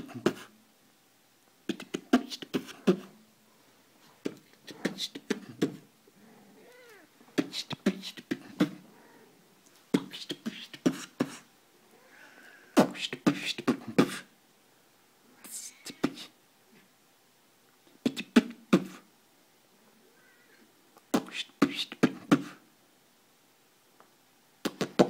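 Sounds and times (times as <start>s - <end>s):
person beatboxing: 1.7s - 3.1s, 4.2s - 5.8s, 7.4s - 8.8s, 9.9s - 11.5s, 12.8s - 14.3s, 18.0s - 19.0s, 21.1s - 22.6s, 24.6s - 25.0s.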